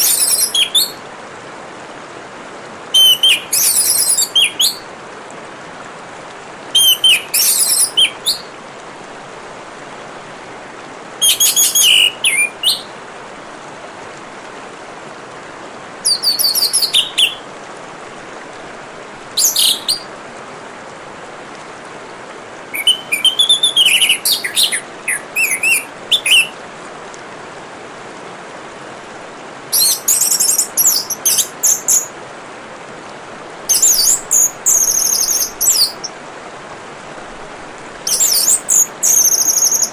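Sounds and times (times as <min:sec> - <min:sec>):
thrush singing: 0:00.0 - 0:01.0, 0:03.0 - 0:04.8, 0:06.8 - 0:08.5, 0:11.2 - 0:12.9, 0:16.1 - 0:17.4, 0:22.7 - 0:26.6, 0:33.7 - 0:36.1
trickle of running water: 0:00.0 - 0:39.9.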